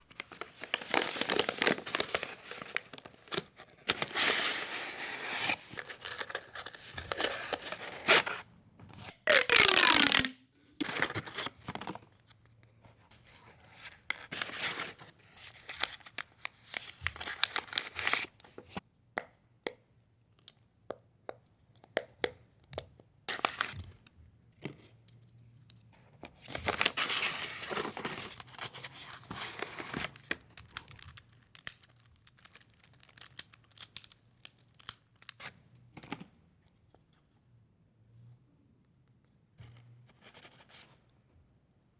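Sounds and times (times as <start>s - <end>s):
packaging crinkling and tearing: 0.1s - 8.4s, 9.0s - 12.0s
sharp rip falling in pitch: 9.3s - 10.4s.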